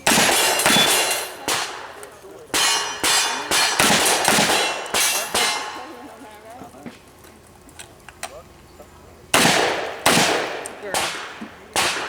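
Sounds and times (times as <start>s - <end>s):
ringing steel targets: 0.0s - 6.0s.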